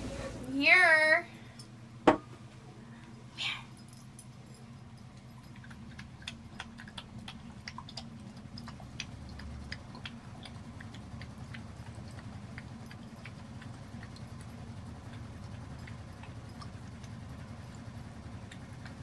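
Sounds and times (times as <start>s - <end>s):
low steady hum: 0.0s - 19.0s
pet eating from a bowl: 4.0s - 19.0s.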